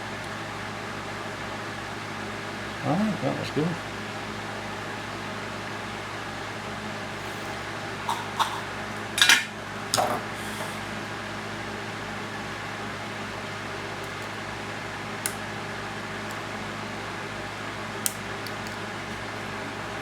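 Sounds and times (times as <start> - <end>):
steady electrical hum: 0.0 - 20.0
hand tools clicking and clattering: 8.1 - 10.1.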